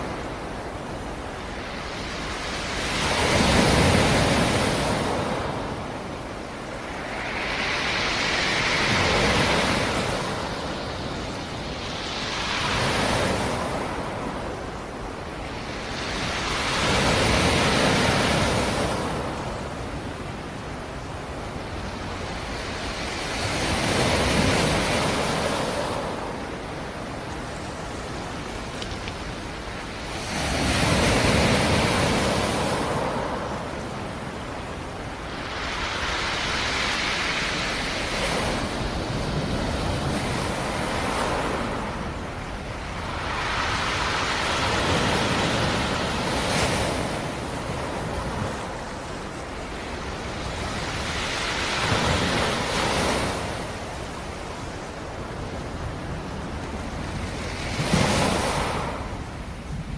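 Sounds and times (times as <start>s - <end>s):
waves breaking on shore: 0.0s - 59.9s.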